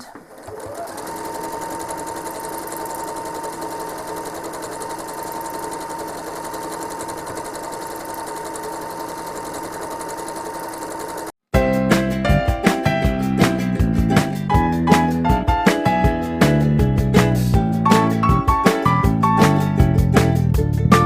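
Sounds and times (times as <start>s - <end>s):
sewing machine running: 0.0s - 11.4s
upbeat plucked-string music: 11.6s - 21.0s.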